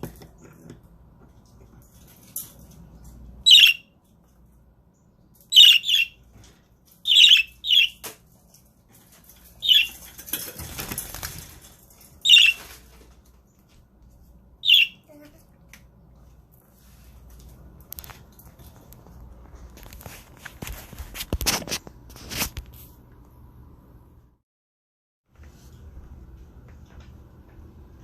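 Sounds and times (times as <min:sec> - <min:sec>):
budgerigars calling: 0:07.1 - 0:08.0.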